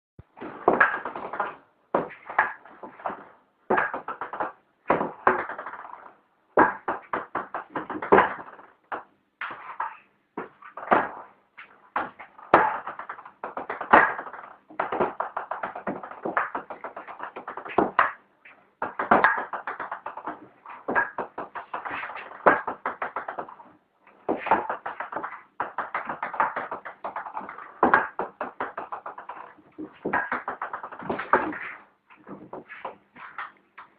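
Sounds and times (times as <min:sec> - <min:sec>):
ping-pong ball bouncing: 0:00.6 - 0:18.2, 0:18.8 - 0:31.8.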